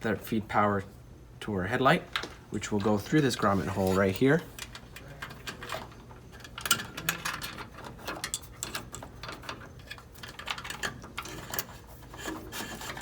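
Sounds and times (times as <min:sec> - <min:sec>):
wiring harness clicks and rustles: 0:02.1 - 0:13.0.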